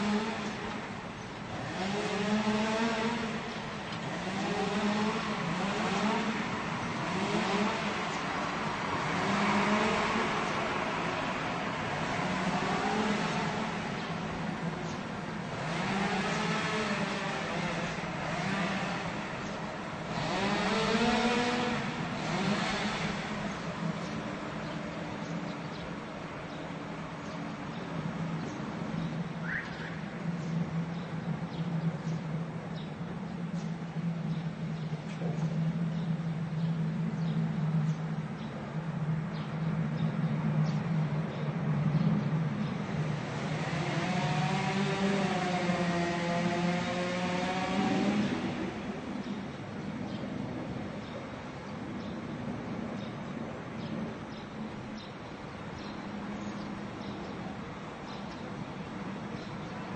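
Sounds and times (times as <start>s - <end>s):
chainsaw engine revving: 1.5s - 3.5s, 4.1s - 8.0s, 15.5s - 19.4s, 20.0s - 23.6s, 43.1s - 48.6s.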